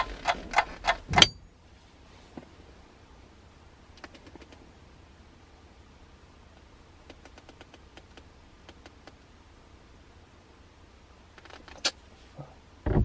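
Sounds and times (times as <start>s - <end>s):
hand tools clicking: 0.0s - 1.4s.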